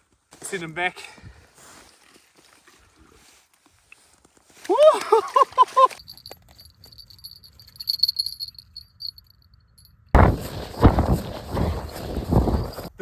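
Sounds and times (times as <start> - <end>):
small bell jingling: 5.9 - 12.9.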